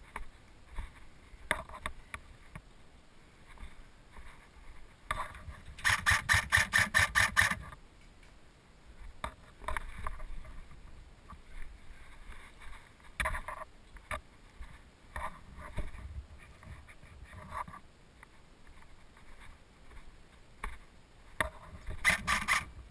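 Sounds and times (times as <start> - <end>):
faint clicks and rustles: 0.0 - 22.9
airsoft gun rapid fire: 5.8 - 7.6, 22.0 - 22.7.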